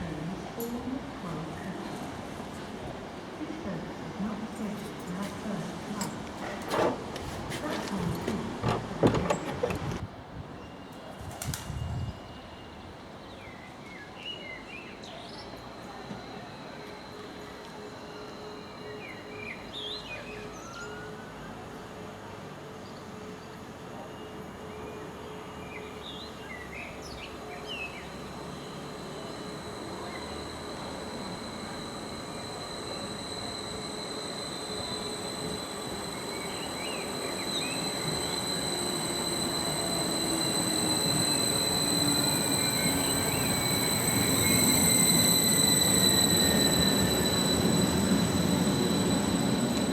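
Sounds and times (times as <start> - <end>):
train rumble: 0.0 - 12.3, 27.0 - 49.9
train squeals: 6.0 - 49.9
high steady tone: 28.4 - 49.9.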